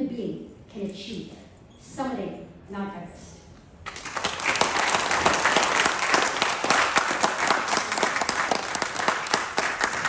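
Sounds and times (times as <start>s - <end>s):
audience applauding: 3.9s - 10.0s.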